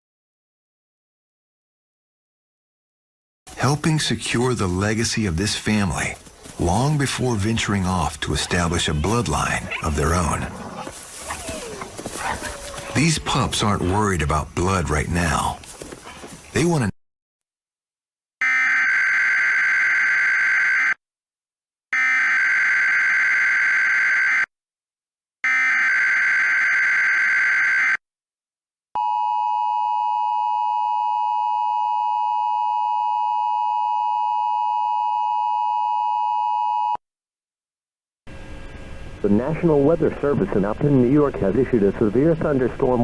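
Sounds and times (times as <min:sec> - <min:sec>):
two-tone attention signal: 0:29.0 - 0:37.0.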